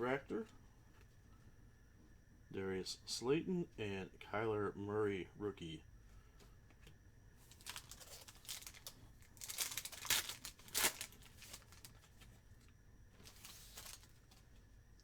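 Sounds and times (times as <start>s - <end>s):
foil wrapper tearing and crinkling: 7.4s - 12.3s, 13.2s - 14.4s.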